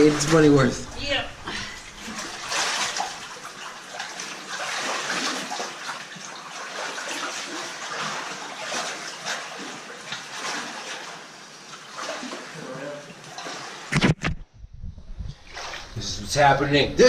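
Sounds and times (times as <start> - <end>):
stream water splashing: 1.6 - 14.0, 15.4 - 16.0.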